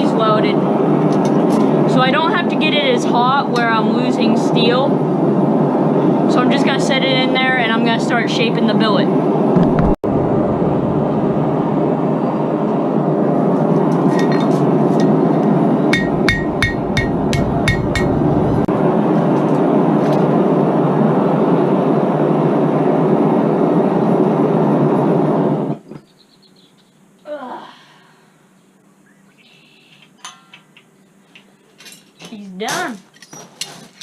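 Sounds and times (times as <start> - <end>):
forge roaring: 9.4 - 25.7
ringing hammer blows: 15.9 - 18.7.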